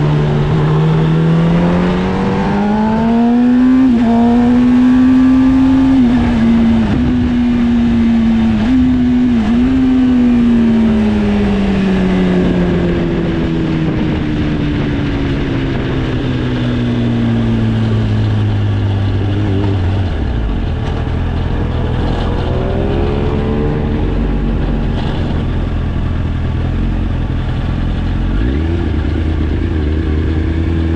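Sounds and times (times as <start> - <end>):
motorcycle engine revving: 0.0 - 30.9.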